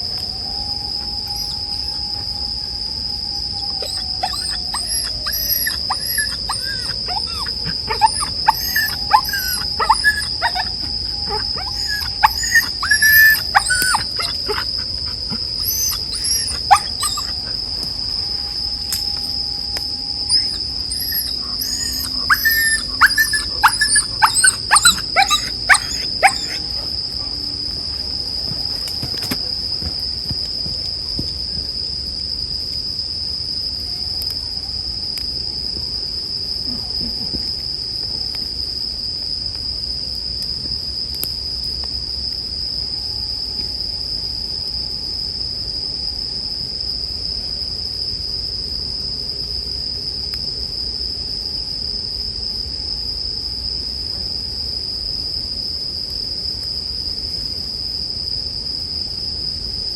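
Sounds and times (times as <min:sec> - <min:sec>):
crickets chirping: 0:00.0 - 0:59.9
whistle-like animal calls: 0:01.0 - 0:02.3, 0:03.5 - 0:17.5, 0:20.1 - 0:27.0.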